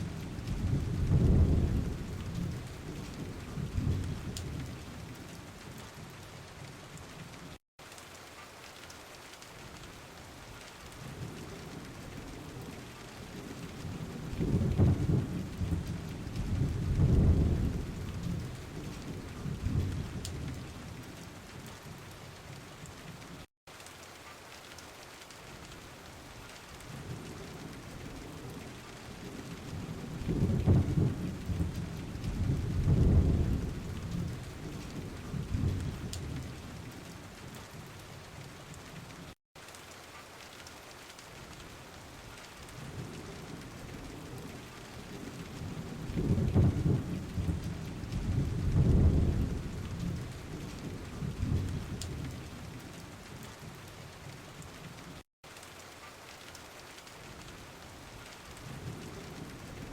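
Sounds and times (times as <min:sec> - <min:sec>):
rolling thunder: 0:00.0 - 0:05.2, 0:11.1 - 0:21.2, 0:27.0 - 0:36.9, 0:42.9 - 0:52.9
steady rain falling: 0:00.0 - 0:59.9.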